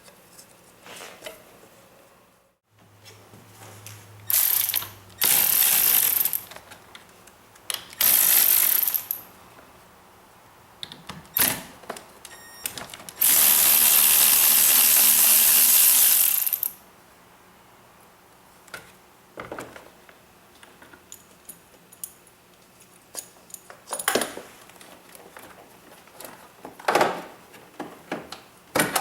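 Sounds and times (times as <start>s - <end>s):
ratchet wrench clicking: 4.3s - 6.5s, 7.9s - 9.3s, 13.2s - 16.8s.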